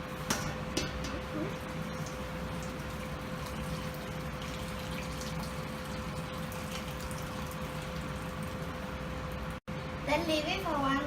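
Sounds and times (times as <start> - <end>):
faint steady hum: 0.0 - 11.0
water pouring and splashing: 1.4 - 9.6.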